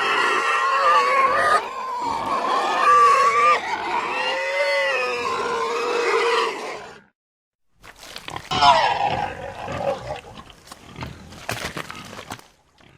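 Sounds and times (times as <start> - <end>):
pig squealing: 0.0 - 7.1, 8.0 - 11.1
pig grunting: 8.0 - 12.9.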